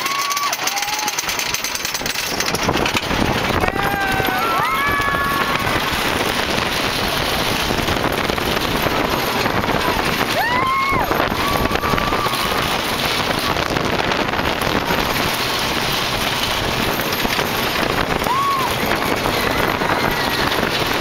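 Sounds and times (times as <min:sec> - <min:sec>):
roller coaster on track: 0:00.0 - 0:21.0
wind on microphone: 0:02.0 - 0:21.0
rider crying out: 0:03.6 - 0:05.9, 0:18.2 - 0:21.0.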